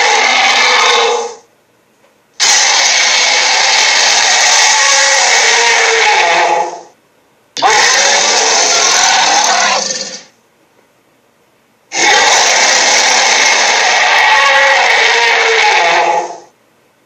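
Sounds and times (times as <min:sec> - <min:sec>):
harsh sound effect bursts: 0:02.4 - 0:06.6, 0:12.0 - 0:16.3.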